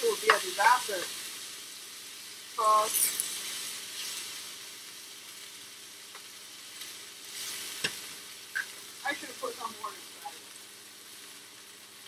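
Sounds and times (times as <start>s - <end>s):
onions sizzling in a pan: 0.0s - 12.0s.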